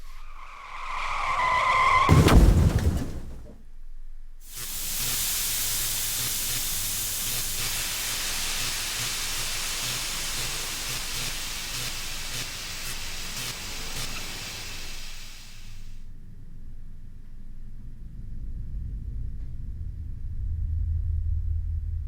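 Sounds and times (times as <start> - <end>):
loud steady hiss: 4.4 - 16.0.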